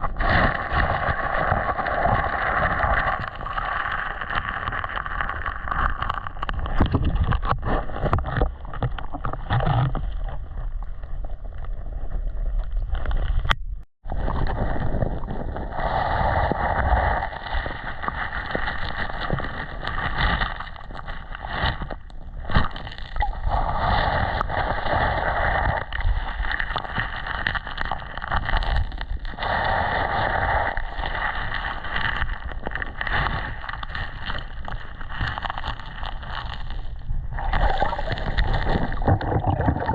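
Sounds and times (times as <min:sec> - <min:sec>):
wind on microphone: 0:11.8 - 0:27.2, 0:28.0 - 0:39.9.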